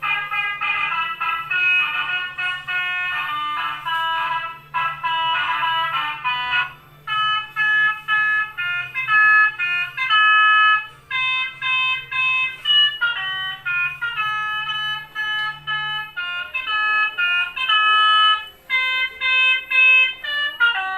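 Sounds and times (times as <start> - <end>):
bus horn playing chiming tune: 0.0 - 20.9.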